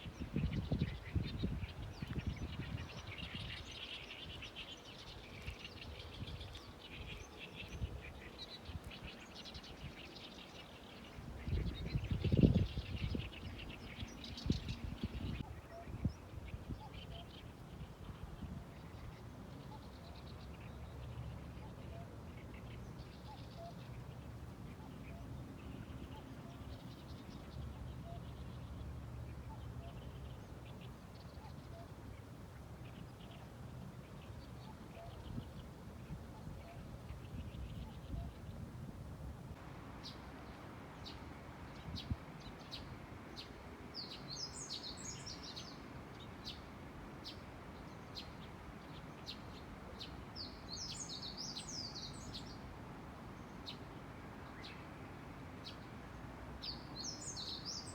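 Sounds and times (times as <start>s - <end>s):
small birds chirping: 0.0s - 38.6s, 53.4s - 57.9s.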